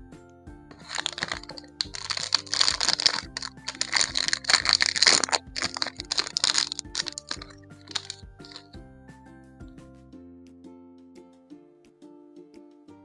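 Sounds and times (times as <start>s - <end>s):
soft background music: 0.0s - 13.0s
plastic packaging crinkling: 0.7s - 8.7s.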